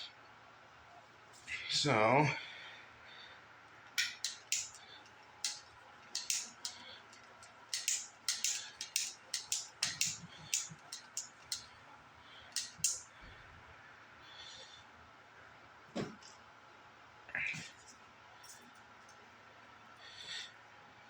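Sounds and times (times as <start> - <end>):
small parts clicking and rustling: 3.9 - 11.7, 12.5 - 13.1.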